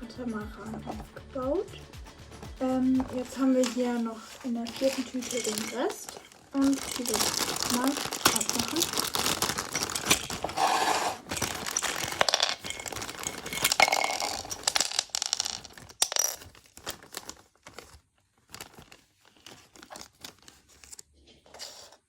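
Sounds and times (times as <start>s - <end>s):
plastic bag crinkling and tearing: 3.0s - 21.2s
plastic toy pieces clicking: 3.6s - 10.6s, 11.3s - 17.9s.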